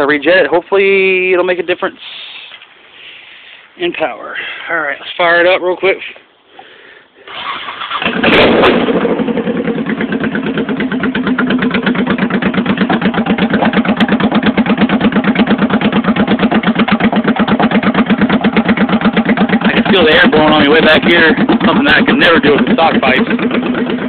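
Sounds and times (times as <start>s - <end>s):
motorcycle engine starting and idling: 7.2s - 24.0s.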